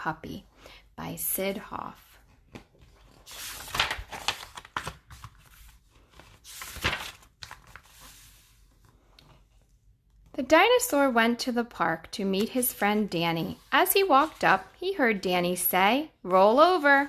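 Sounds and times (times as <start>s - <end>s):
book pages rustling: 2.2s - 10.4s, 12.4s - 14.7s.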